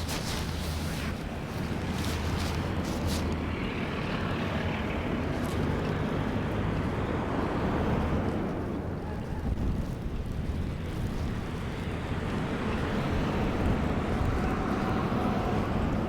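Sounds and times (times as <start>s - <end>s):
street noise hiss: 0.0s - 8.9s
vehicle engine rumble: 0.0s - 16.0s.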